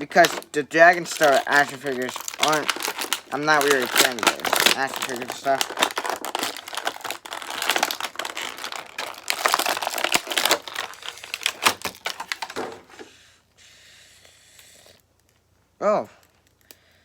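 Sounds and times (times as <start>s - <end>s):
plastic packaging crinkling: 0.0s - 13.1s.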